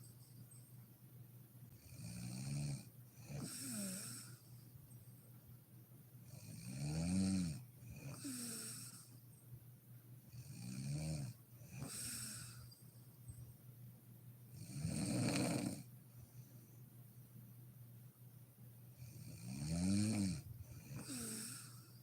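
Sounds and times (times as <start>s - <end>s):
woman snoring: 1.8s - 4.4s, 6.5s - 9.1s, 10.4s - 12.7s, 14.6s - 15.9s, 19.1s - 22.0s
soft breath out: 21.0s - 22.0s.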